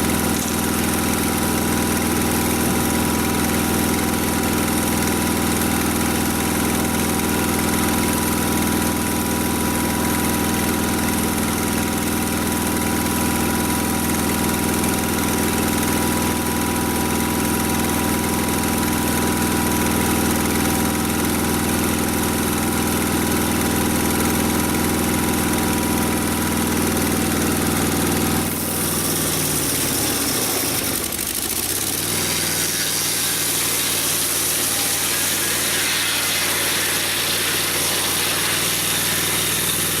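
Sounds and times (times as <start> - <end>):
rough mechanical noise: 0.0 - 40.0
sawmill engine running: 0.0 - 40.0.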